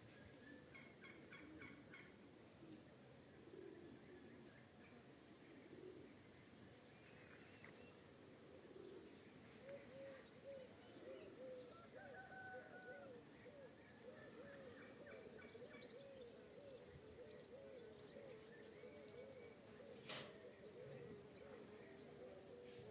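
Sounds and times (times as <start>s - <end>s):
small birds chirping: 14.2s - 22.9s.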